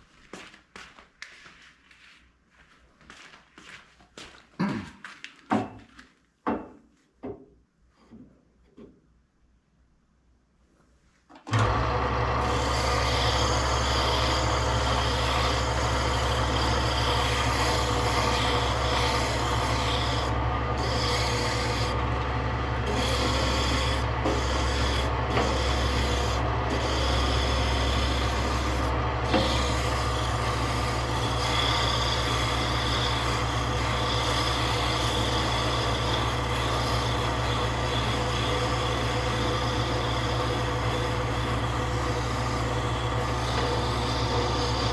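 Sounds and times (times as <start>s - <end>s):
power tool motor hum: 11.5s - 44.9s
rasping on wood: 12.4s - 44.9s.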